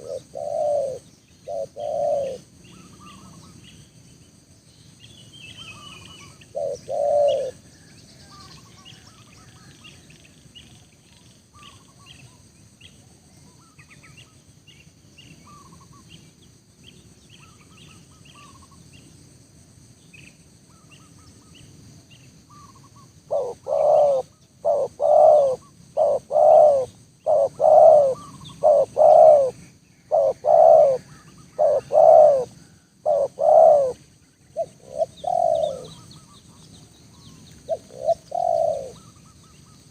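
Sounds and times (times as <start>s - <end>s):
dove cooing: 0.0s - 3.6s, 5.6s - 10.0s, 22.5s - 36.6s, 37.2s - 39.9s
small birds chirping: 0.0s - 19.2s, 20.0s - 39.9s.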